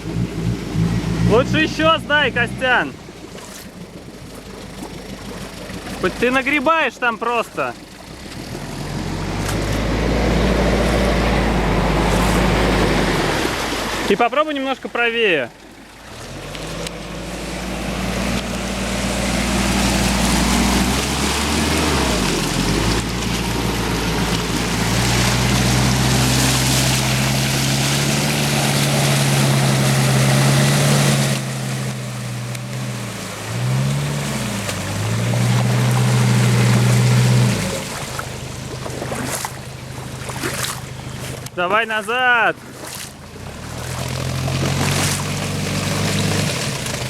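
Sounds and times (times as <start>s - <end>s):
engine revving hard: 0.0s - 3.0s, 8.1s - 14.1s, 16.1s - 38.2s, 42.9s - 47.0s
wheels churning through mud: 0.0s - 47.0s.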